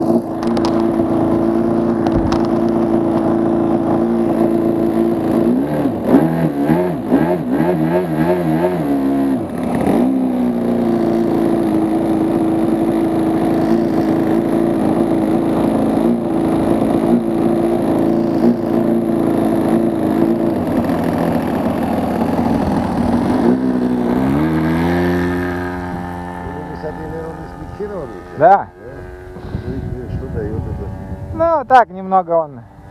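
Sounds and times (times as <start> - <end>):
model plane engine running: 0.0 - 32.9.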